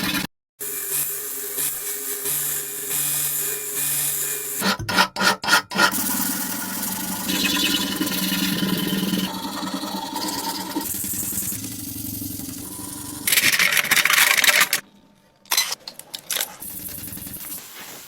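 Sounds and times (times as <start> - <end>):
power tool motor running: 5.9 - 14.8.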